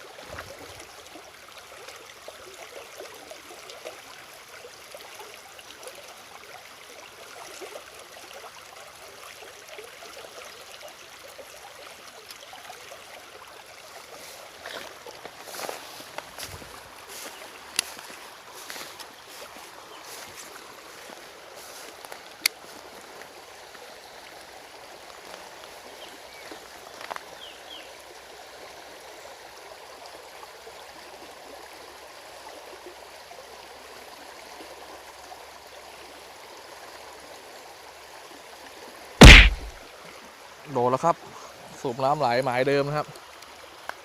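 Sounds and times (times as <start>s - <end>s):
stream water over rocks: 0.0s - 44.0s
sharp click: 39.2s - 39.8s.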